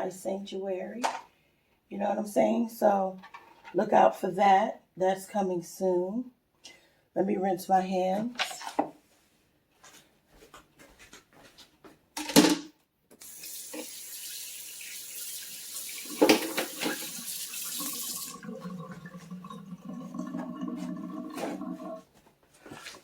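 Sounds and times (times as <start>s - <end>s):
faucet running: 13.2s - 22.0s.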